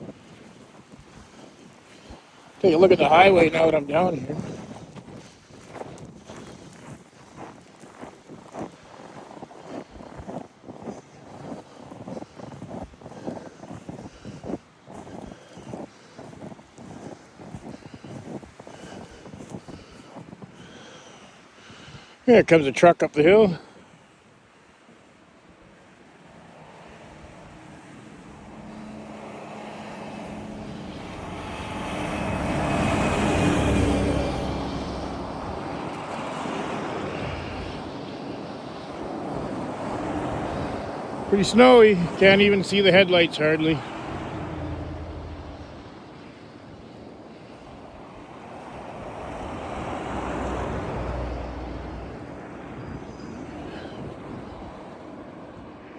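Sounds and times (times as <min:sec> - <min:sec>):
vehicle passing on highway: 0:00.0 - 0:10.6, 0:25.0 - 0:55.9
wind: 0:00.0 - 0:55.9
truck engine drone: 0:27.5 - 0:46.2, 0:49.2 - 0:53.5.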